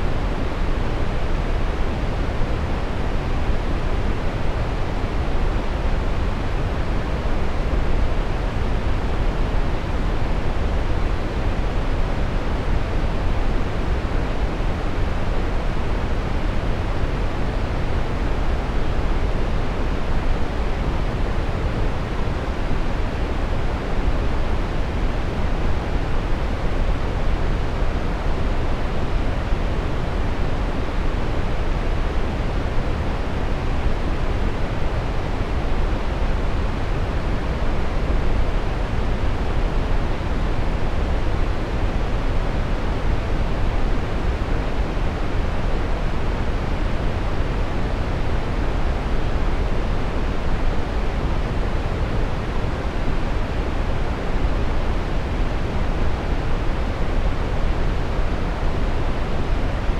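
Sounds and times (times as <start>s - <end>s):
brown noise: 0.0s - 59.9s.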